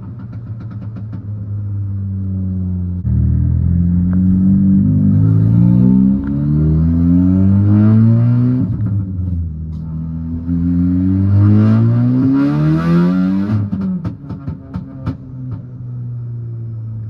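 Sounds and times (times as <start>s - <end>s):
exhaust cracks: 0.0s - 6.5s
car engine accelerating hard: 0.0s - 15.3s.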